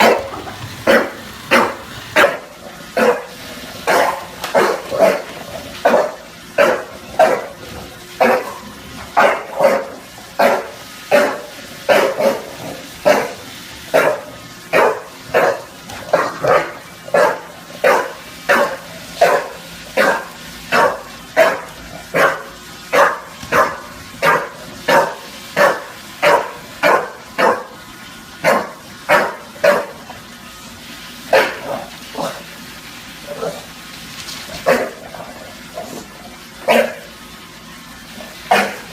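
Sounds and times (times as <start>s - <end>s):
dog barking: 0.0s - 2.4s, 3.0s - 7.6s, 8.2s - 8.6s, 9.2s - 12.4s, 13.0s - 27.7s, 28.4s - 30.0s, 31.3s - 32.4s, 34.6s - 35.0s, 38.5s - 38.8s.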